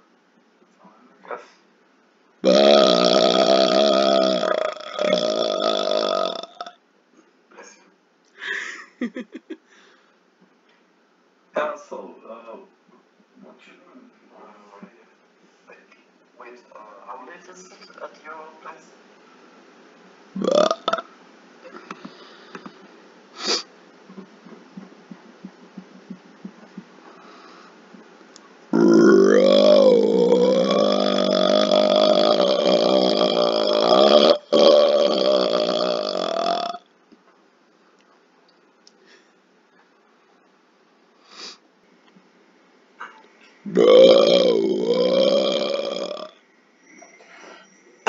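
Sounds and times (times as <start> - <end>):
man belching: 2.4 - 6.8, 20.4 - 21.0, 28.7 - 36.8, 43.7 - 46.3
sharp sniff: 23.4 - 23.7, 41.2 - 41.6.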